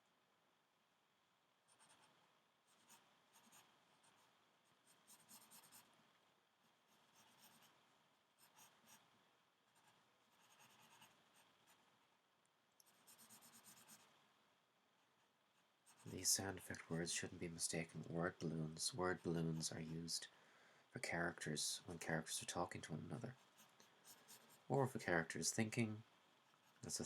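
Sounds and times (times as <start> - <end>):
pencil scratching on paper: 1.7 - 5.9, 6.8 - 7.8, 8.4 - 9.0, 9.7 - 11.9, 12.8 - 14.1, 15.6 - 16.3, 23.0 - 24.7.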